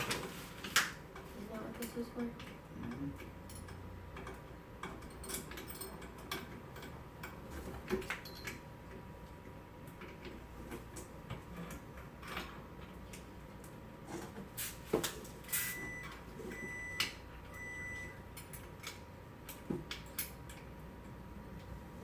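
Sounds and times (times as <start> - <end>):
short electronic beeps: 15.6 - 18.2.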